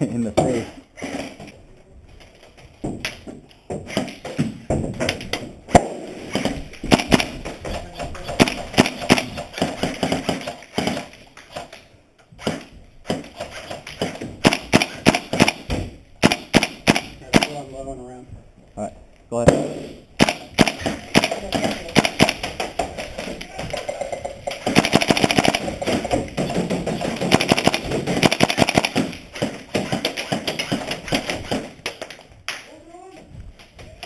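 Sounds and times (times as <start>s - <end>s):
airsoft guns firing: 3.9s - 11.7s, 12.4s - 17.7s, 19.5s - 32.2s.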